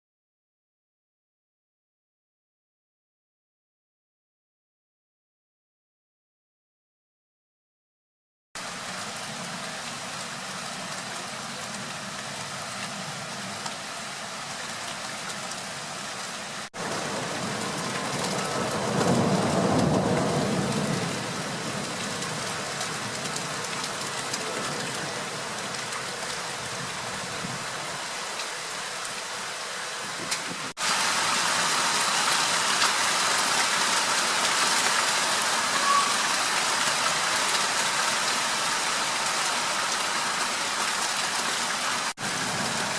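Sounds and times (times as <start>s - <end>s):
rain falling: 8.6s - 42.9s
low rumble of thunder: 16.8s - 23.5s.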